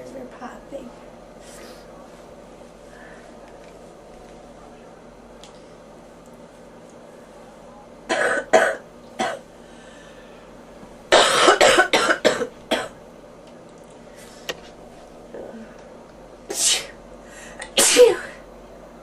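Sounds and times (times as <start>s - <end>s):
person coughing: 8.1s - 9.4s, 11.1s - 13.0s, 17.8s - 18.4s.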